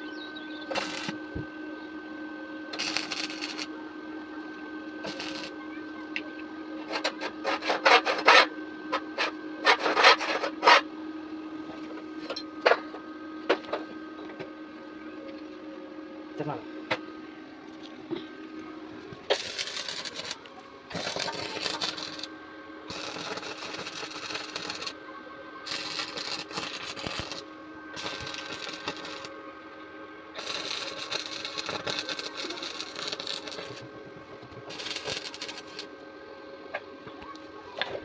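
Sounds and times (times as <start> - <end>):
welding machine hum: 0.0 - 38.0
welding arc crackling: 0.7 - 1.4, 2.7 - 3.7, 5.0 - 5.6, 19.2 - 25.0, 25.6 - 29.4, 30.3 - 33.9, 34.6 - 36.0.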